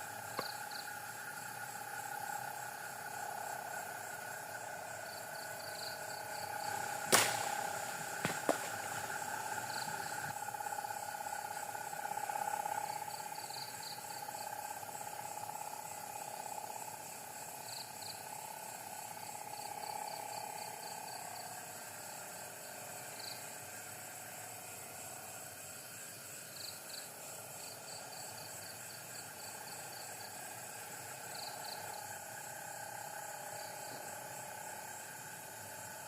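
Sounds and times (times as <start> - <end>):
steady wavering hum: 0.0 - 25.0
crickets chirping: 0.0 - 36.0.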